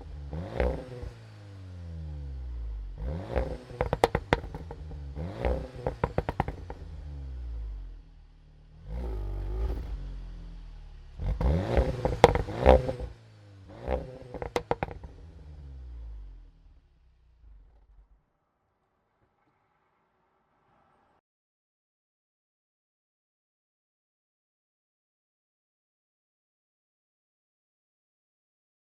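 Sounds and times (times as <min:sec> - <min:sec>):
car engine revving: 0:00.0 - 0:18.3
exhaust pops and crackles: 0:03.4 - 0:06.9, 0:11.2 - 0:13.1, 0:13.9 - 0:15.3.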